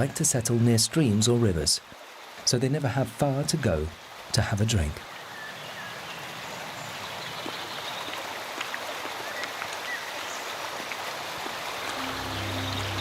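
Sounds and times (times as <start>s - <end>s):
stream babbling: 0.0s - 13.0s
soft music: 11.8s - 13.0s.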